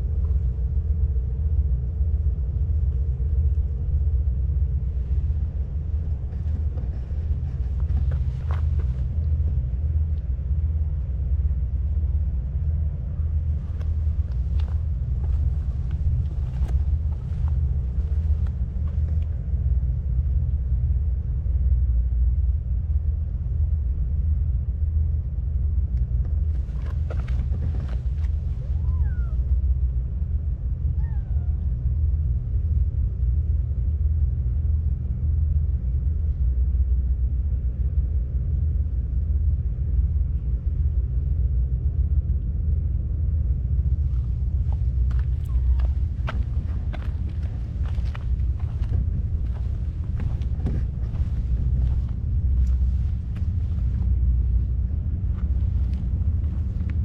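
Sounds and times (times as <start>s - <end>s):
low outdoor rumble: 0.0s - 57.0s
cat meowing: 28.6s - 29.5s, 30.9s - 31.6s.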